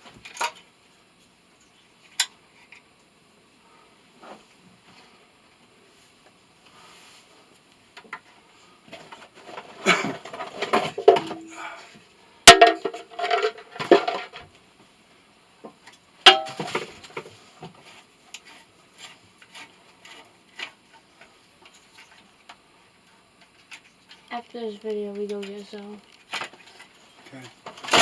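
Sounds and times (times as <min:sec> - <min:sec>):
metal tools clanking: 0:09.9 - 0:11.6, 0:12.5 - 0:14.4, 0:16.3 - 0:16.8.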